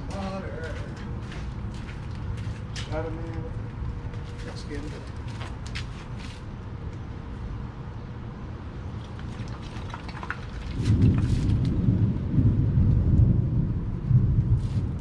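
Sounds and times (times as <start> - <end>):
thunder rumbling: 10.6 - 15.0.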